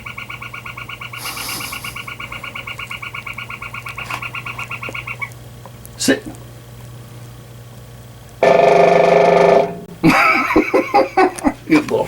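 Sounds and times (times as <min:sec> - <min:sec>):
woodpecker rapid call: 0:00.0 - 0:05.3, 0:08.4 - 0:09.8
brief hiss: 0:01.2 - 0:02.0.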